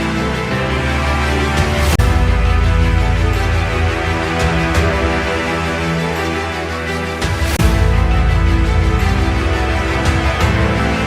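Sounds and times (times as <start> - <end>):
background music with pulsing bass: 0.0 - 11.0.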